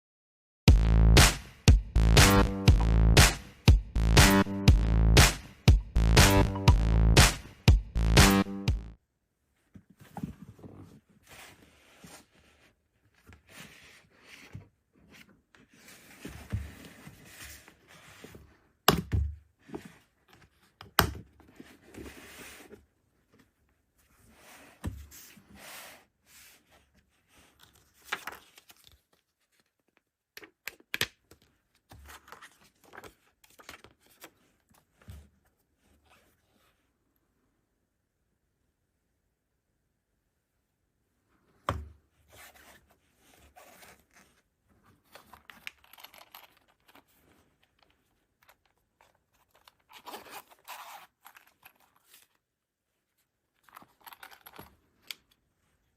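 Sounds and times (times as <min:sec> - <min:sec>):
packaging rustling and tearing: 0:45.0 - 0:52.4, 0:53.6 - 0:54.8.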